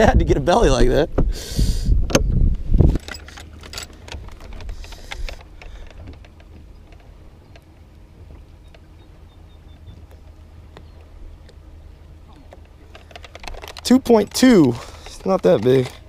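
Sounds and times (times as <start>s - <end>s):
low steady hum: 0.0s - 16.0s
clicks and knocks handling gear: 2.9s - 7.9s, 12.4s - 16.0s.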